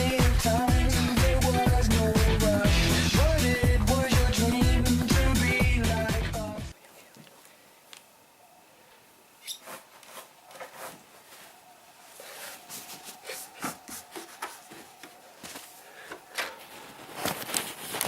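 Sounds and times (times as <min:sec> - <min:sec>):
rubbing and scraping: 0:09.4 - 0:15.8.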